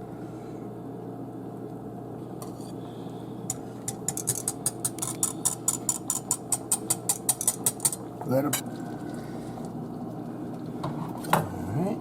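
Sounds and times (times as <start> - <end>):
utensil stirring in a pot: 3.5 - 11.3
clicks against pot sides: 3.9 - 8.0.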